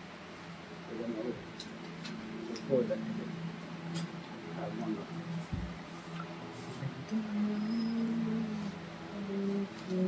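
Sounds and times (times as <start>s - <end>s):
person humming steady note: 7.1s - 10.0s.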